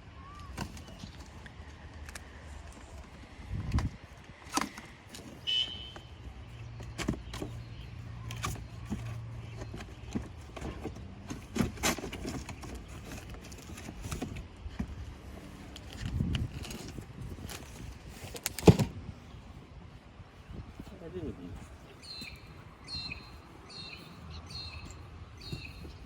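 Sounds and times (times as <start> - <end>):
cardboard being handled: 6.8 - 19.0.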